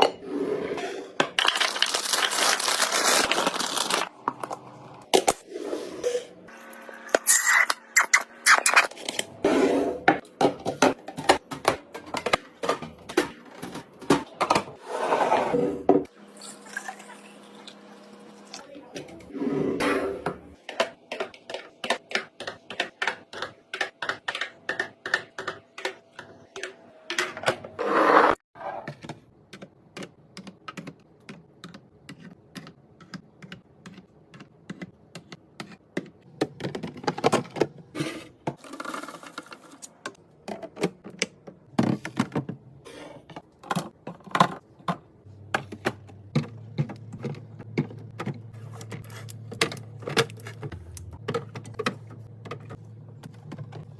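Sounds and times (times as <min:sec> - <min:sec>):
packaged items clicking and tapping: 0:01.2 - 0:05.3, 0:10.2 - 0:14.7, 0:20.6 - 0:27.7, 0:28.9 - 0:42.6, 0:43.3 - 0:53.9.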